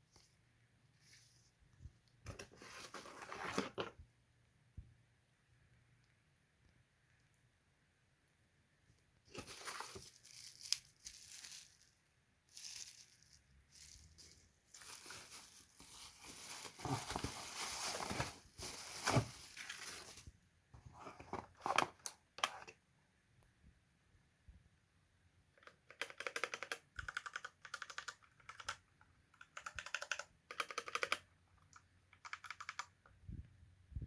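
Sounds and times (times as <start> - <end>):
packaging crinkling and tearing: 9.3 - 20.3.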